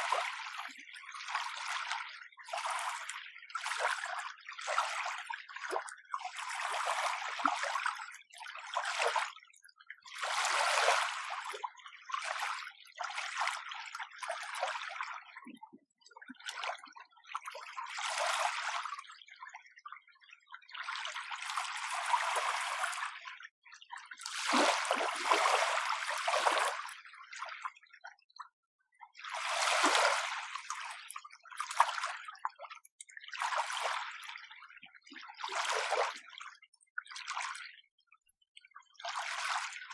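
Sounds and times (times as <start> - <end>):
small waves lapping at shore: 10.2 - 11.4, 24.2 - 27.0, 29.2 - 32.1.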